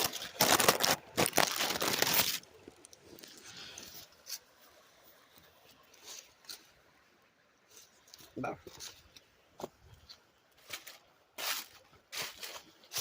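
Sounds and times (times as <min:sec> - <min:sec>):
crinkling crunching rustle: 0:00.0 - 0:04.4.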